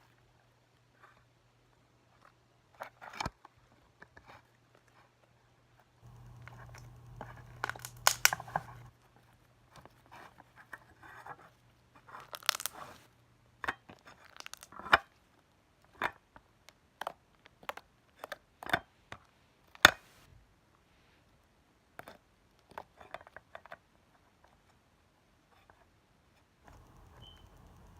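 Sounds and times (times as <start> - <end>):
slime squeezed sticky pops: 12.4 - 13.0.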